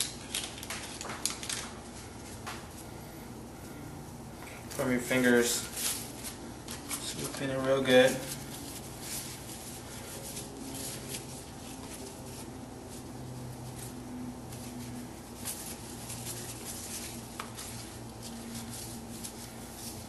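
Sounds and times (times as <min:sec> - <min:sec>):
low steady hum: 0:00.0 - 0:20.0
cloth wiping a touchscreen: 0:07.0 - 0:20.0.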